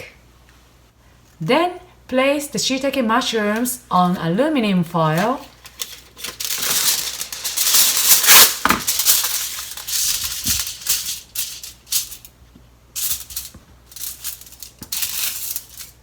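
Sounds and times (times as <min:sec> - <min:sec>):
aluminium foil crinkling: 0:05.1 - 0:12.3, 0:13.0 - 0:16.0.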